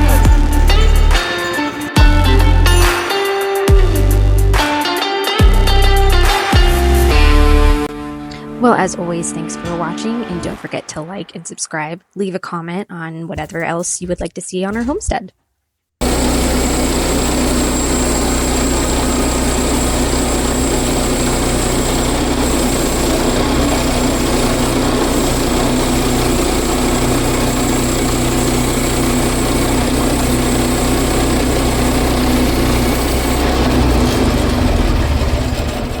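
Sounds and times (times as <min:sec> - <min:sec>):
small gasoline engine running: 0:00.0 - 0:01.3, 0:16.0 - 0:36.0.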